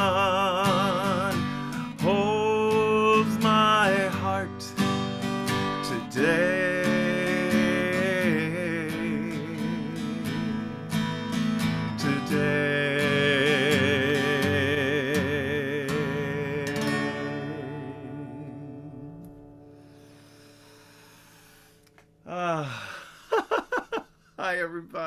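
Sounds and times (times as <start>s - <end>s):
person singing with vibrato: 0.0s - 4.9s, 5.7s - 10.6s, 11.9s - 19.3s
guitar strumming chords: 0.0s - 21.0s.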